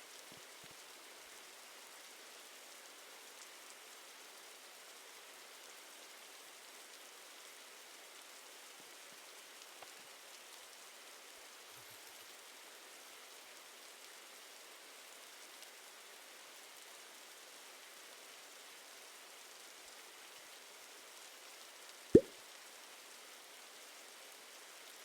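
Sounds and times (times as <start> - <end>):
faint steady hiss: 0.0 - 12.6, 21.2 - 25.0.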